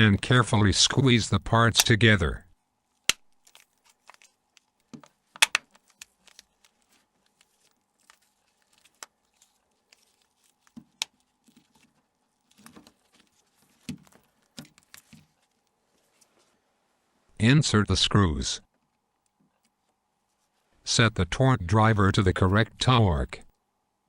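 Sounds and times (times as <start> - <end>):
plastic phone parts clicking: 3.0 - 11.9.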